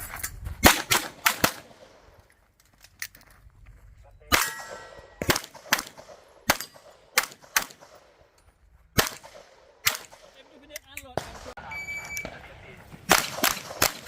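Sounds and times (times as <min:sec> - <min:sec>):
pistol shots: 0:00.6 - 0:02.0, 0:04.3 - 0:08.2, 0:09.0 - 0:10.6, 0:13.0 - 0:14.0
metallic ringing of steel target: 0:04.3 - 0:05.3.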